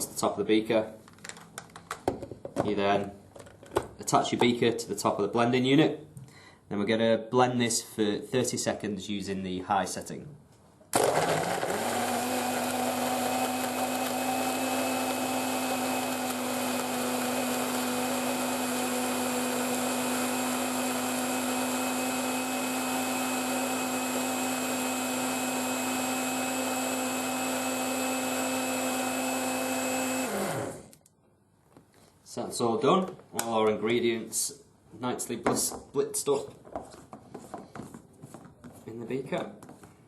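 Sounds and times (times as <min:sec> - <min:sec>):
blender motor running: 0:11.0 - 0:30.9.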